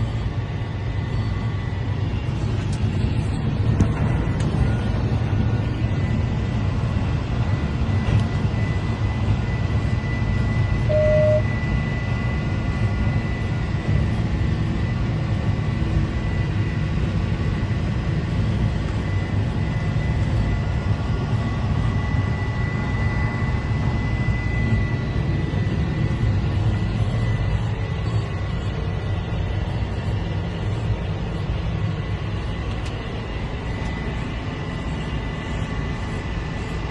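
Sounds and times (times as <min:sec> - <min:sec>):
deep engine drone: 0:00.0 - 0:36.9
high steady whine: 0:00.0 - 0:36.9
short beep: 0:10.8 - 0:11.6.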